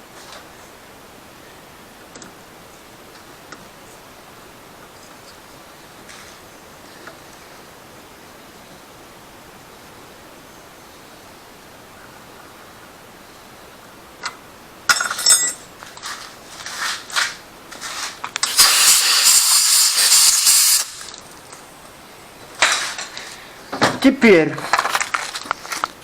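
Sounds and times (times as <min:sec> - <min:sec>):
air blow gun hissing: 0:18.4 - 0:21.2.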